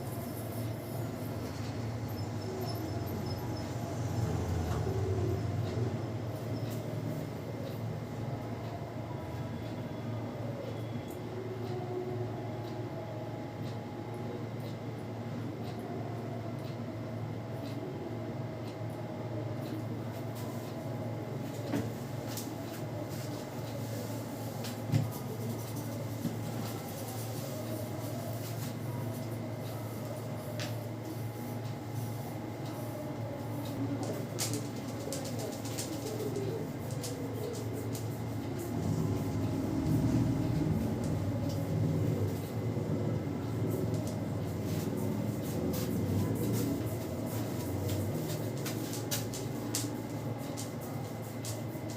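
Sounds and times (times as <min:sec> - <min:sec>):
steady electrical hum: 0:00.0 - 0:51.9
small clicks and crackles: 0:33.6 - 0:38.2, 0:46.5 - 0:51.9.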